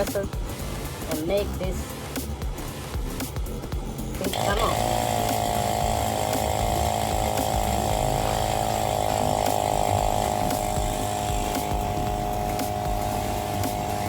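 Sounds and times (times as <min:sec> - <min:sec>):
air compressor running: 0:00.0 - 0:14.0.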